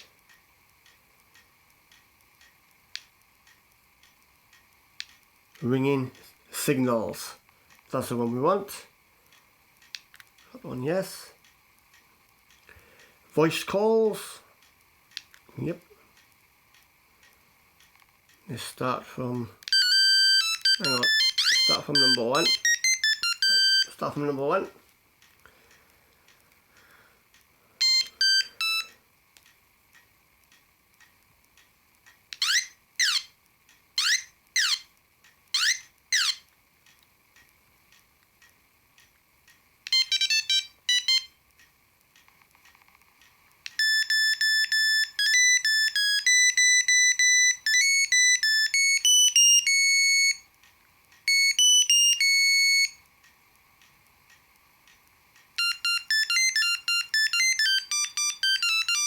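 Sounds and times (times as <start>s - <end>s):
phone ringtone beeping tunes: 19.7s - 24.0s, 27.8s - 29.0s, 32.4s - 33.3s, 34.0s - 34.9s, 35.6s - 36.4s, 39.9s - 41.4s, 43.8s - 50.4s, 51.3s - 53.0s, 55.6s - 59.0s.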